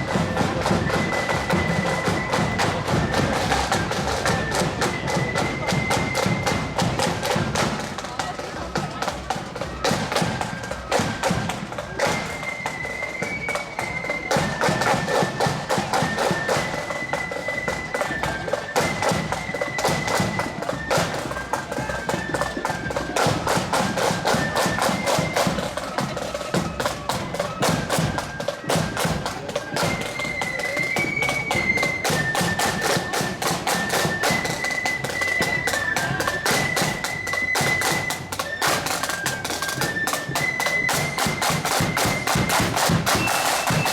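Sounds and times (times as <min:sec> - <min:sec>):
heavy drumming: 0:00.0 - 0:12.6, 0:30.6 - 0:43.9.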